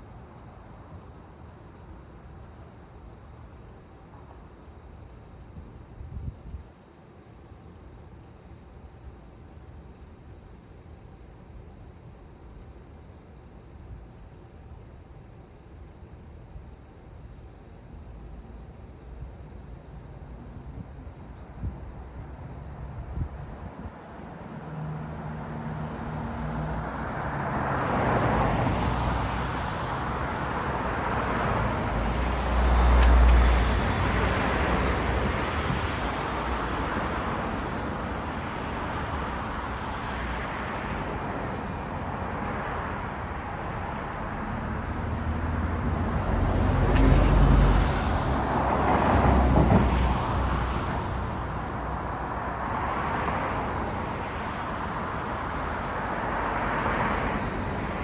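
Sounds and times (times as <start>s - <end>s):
road traffic rumble: 16.9s - 58.0s
vehicles passing close by: 24.4s - 58.0s.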